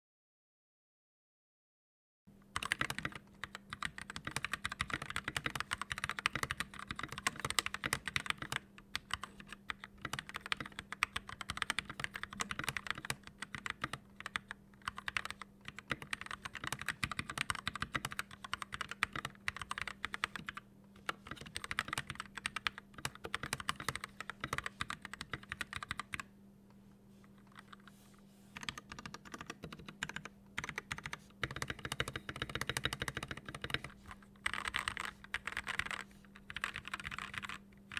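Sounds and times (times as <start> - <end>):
fast typing on mechanical keyboard: 2.6 - 26.3, 28.6 - 37.9.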